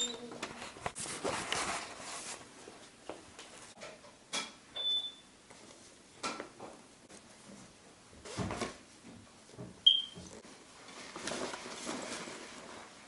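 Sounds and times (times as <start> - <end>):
rustling handling noise: 0.3 - 3.8, 10.2 - 13.0.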